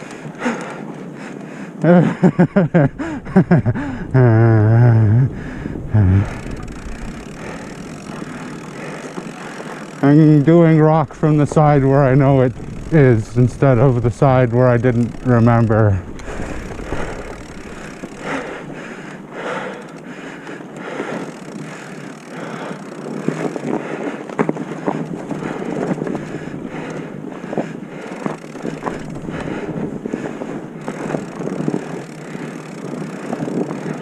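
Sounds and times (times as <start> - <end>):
bicycle tyre noise: 0.0 - 34.0
bike rattling and knocking: 0.0 - 34.0
wind on microphone: 2.4 - 9.4, 10.3 - 19.4, 24.8 - 32.2.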